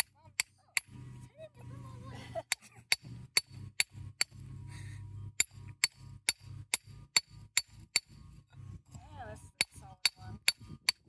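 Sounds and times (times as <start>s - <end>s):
hammer striking steel chisel: 0.0s - 1.0s, 2.5s - 4.4s, 5.4s - 8.6s, 9.6s - 11.0s.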